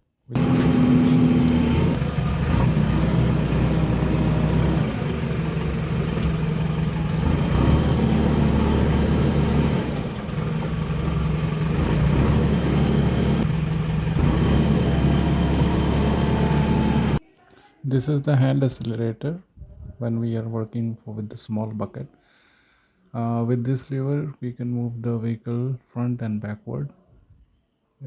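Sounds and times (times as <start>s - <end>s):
diesel engine running: 0.3s - 17.2s.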